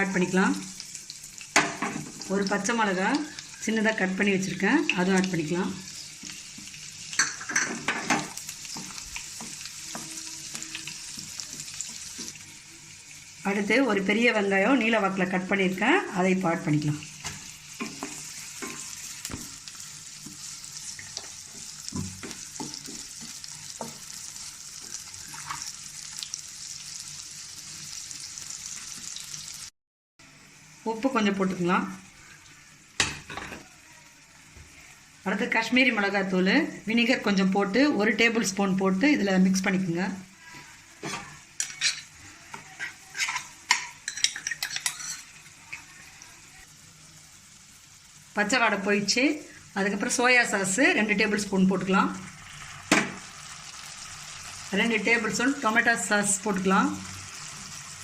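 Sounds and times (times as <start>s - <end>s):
vegetables sizzling in hot oil: 0.0s - 58.0s
spatula scraping pan: 5.8s - 12.5s, 17.2s - 25.8s, 40.5s - 45.4s.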